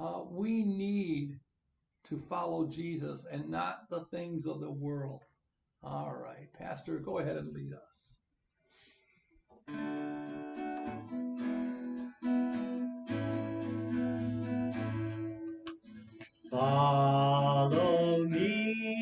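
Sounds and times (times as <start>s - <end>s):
acoustic guitar strumming chords: 9.7s - 19.0s.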